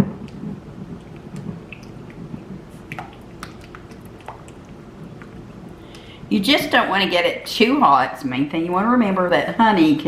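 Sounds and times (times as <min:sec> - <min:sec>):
sticky squishing of stirring: 0:00.2 - 0:06.4.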